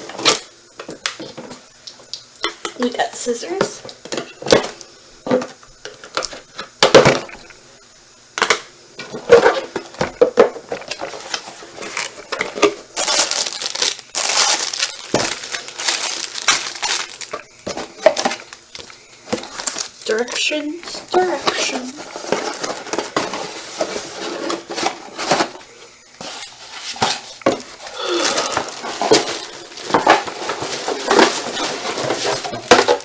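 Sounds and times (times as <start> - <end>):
dense rustling: 10.8 - 33.0
packaging crinkling and tearing: 10.9 - 25.5, 26.2 - 33.0.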